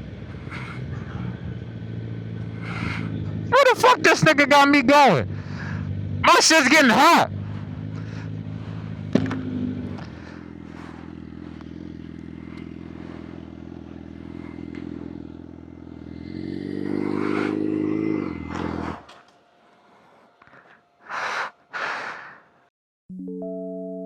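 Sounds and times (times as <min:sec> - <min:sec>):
motorcycle engine idling: 0:00.0 - 0:03.6, 0:05.2 - 0:06.2, 0:07.3 - 0:18.0
rider speaking: 0:03.5 - 0:07.4.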